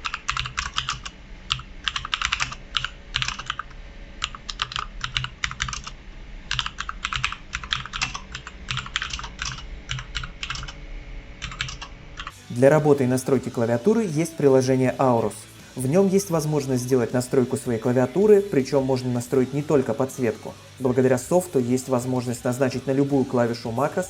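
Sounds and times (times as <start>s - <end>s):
soft keyboard keystrokes: 0.0s - 5.9s, 6.5s - 10.8s, 11.4s - 12.4s.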